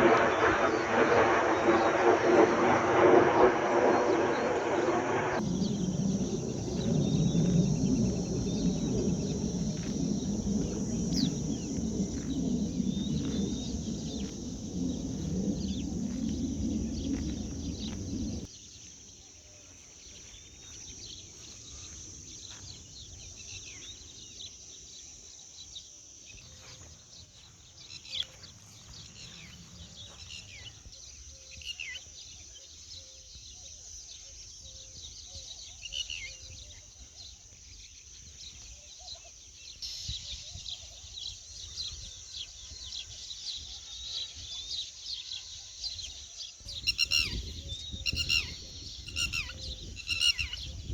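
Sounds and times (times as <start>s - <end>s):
loud low rumble: 0.0s - 18.5s
small birds chirping: 0.0s - 18.8s, 45.9s - 50.9s
high insect drone: 0.0s - 24.2s.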